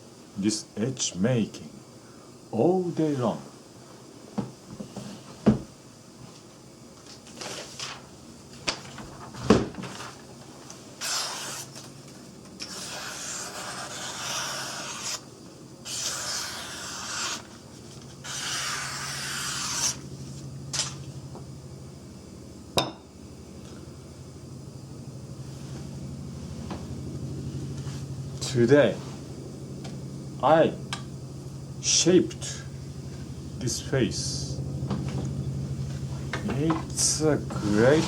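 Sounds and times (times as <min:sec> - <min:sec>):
knife rubbing on strop: 0:11.0 - 0:11.8, 0:12.6 - 0:15.2, 0:15.9 - 0:17.5, 0:18.2 - 0:20.0.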